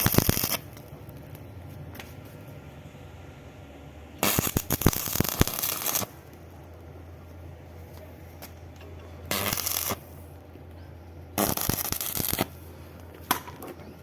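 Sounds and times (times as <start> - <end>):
welding arc crackling: 0.0 - 1.4, 4.2 - 7.0, 9.3 - 10.4, 11.4 - 12.6.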